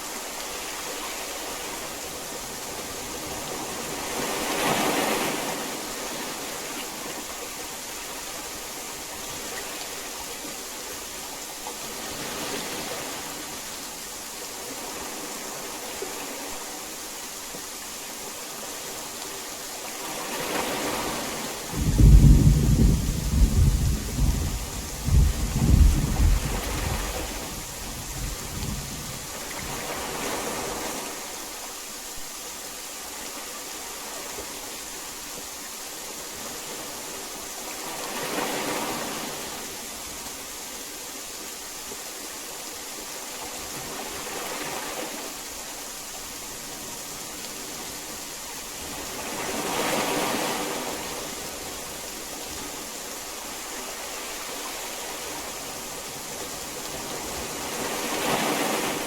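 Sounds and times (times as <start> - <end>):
heavy rain hiss: 0.0 - 59.0
low thunder rumble: 21.7 - 29.3.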